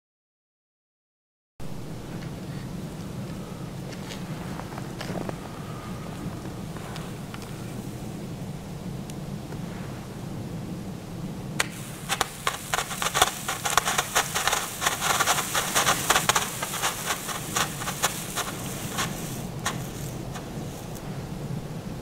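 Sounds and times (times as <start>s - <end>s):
fireworks popping and crackling: 11.6s - 21.0s.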